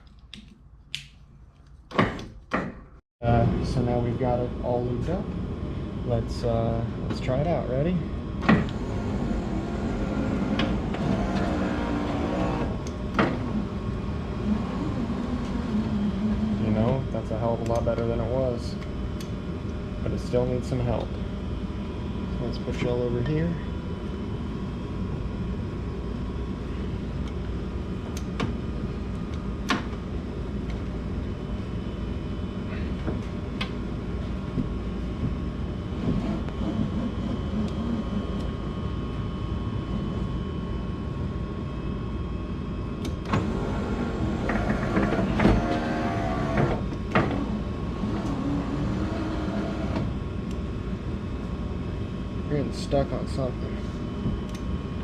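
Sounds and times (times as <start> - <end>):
power window motor hum: 8.6 - 16.8, 43.3 - 50.1.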